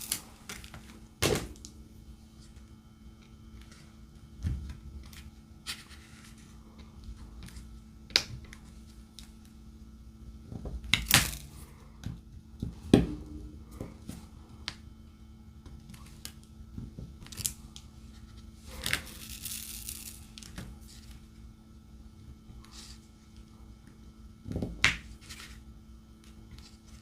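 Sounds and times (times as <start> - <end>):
rustling crinkle: 17.3 - 21.2.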